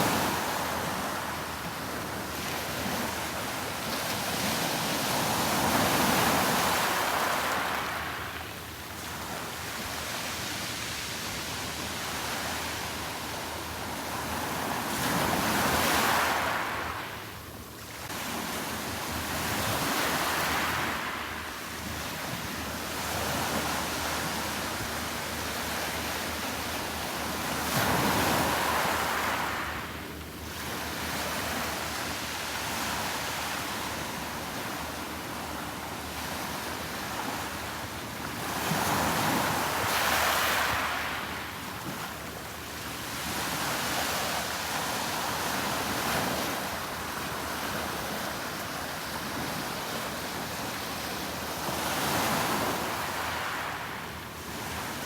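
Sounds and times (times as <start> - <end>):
sea waves washing onto beach: 17.9 - 55.0.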